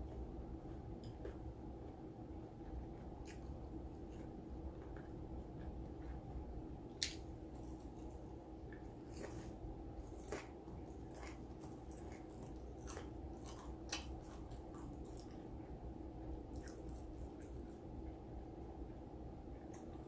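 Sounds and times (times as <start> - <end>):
person chewing food: 0.0 - 18.2
wet mouth clicks and smacks: 7.0 - 7.3.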